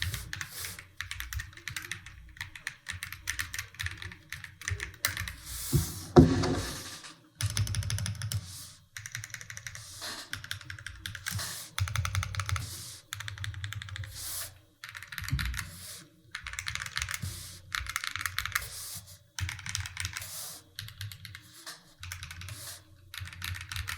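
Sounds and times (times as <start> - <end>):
loud knock: 5.8 - 6.9.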